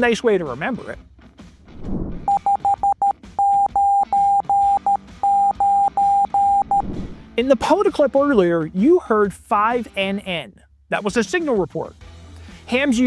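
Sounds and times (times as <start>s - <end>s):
morse code tone beeping: 2.3s - 6.8s.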